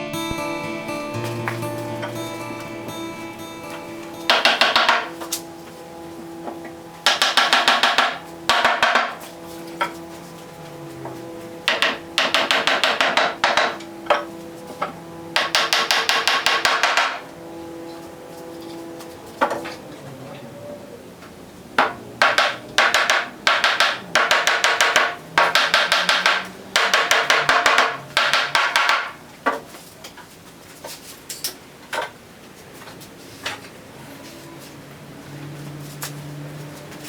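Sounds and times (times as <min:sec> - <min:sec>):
hammer blows on wood: 0:01.1 - 0:05.4, 0:11.6 - 0:17.3.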